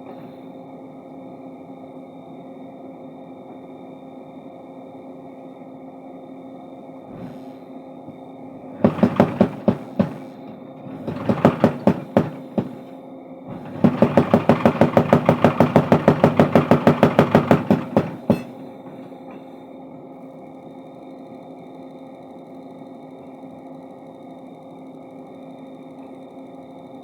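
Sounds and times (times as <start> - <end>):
power hammer motor humming: 8.6 - 12.9, 13.5 - 18.6
hammer striking hot steel: 8.8 - 19.4.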